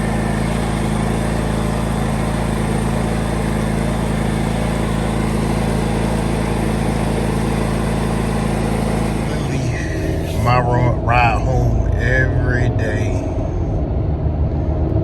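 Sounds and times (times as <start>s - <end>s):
engine running steadily: 0.0s - 15.0s.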